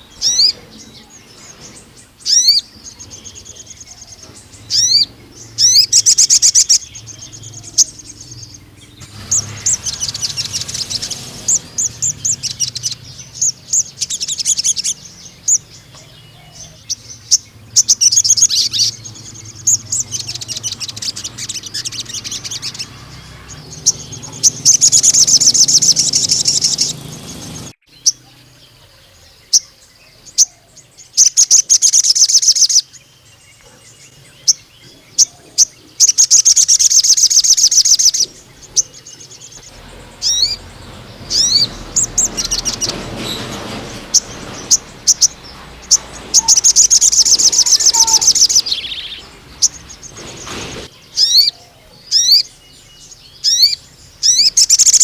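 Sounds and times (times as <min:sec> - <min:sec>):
sunbird high-pitched trills: 0:00.0 - 0:43.5, 0:44.1 - 0:50.1, 0:50.9 - 0:55.0
sunbird sharp chirps: 0:00.0 - 0:55.0
quick downward-sliding bird notes: 0:04.7 - 0:15.0.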